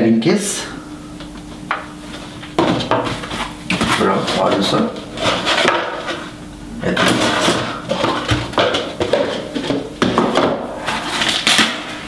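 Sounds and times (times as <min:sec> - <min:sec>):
case scraping: 0:02.8 - 0:06.3.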